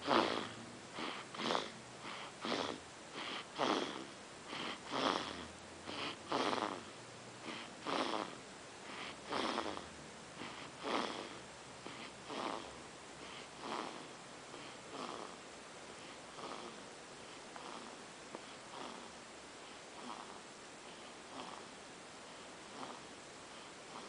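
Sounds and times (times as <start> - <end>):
person snoring: 0.0 - 8.4, 9.0 - 12.7, 13.3 - 15.4, 16.3 - 16.8, 17.6 - 18.0, 18.7 - 19.1, 20.0 - 20.4, 21.3 - 21.7.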